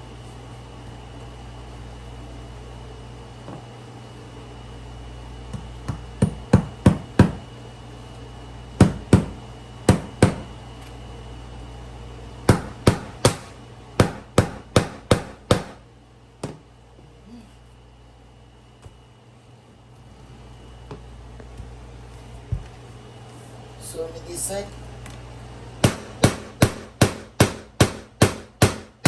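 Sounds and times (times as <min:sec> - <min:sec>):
hammer driving nails: 0:12.5 - 0:15.8, 0:25.8 - 0:28.9.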